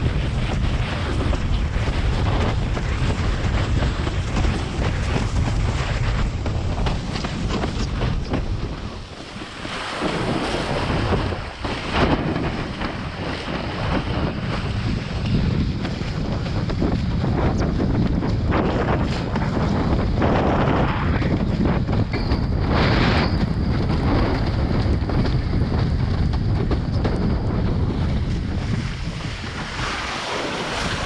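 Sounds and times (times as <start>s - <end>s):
rushing water: 0.0s - 17.7s, 27.4s - 31.0s
wind buffeting microphone: 0.0s - 31.0s.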